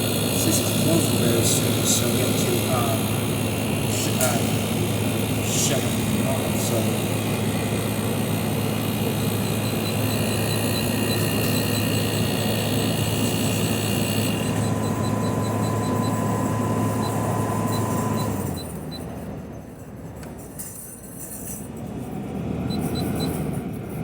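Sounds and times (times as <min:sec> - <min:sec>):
air conditioner humming: 0:00.0 - 0:19.2
fan air noise: 0:00.0 - 0:24.0.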